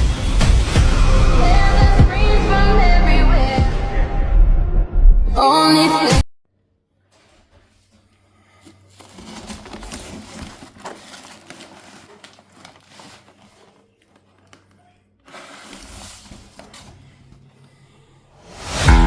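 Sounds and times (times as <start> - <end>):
packaging rustling and crinkling: 7.1 - 17.6.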